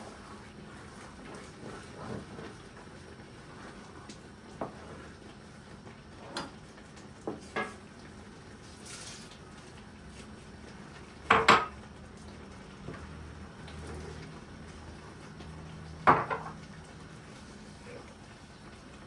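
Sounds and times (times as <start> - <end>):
dishes and utensils clinking: 11.3 - 11.8.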